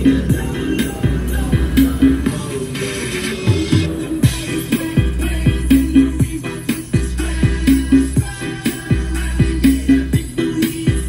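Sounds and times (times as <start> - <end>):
deep sustained bass: 0.0 - 2.3
heavy kick drum: 0.0 - 2.4, 3.7 - 11.0
electronic dance music: 0.0 - 11.0.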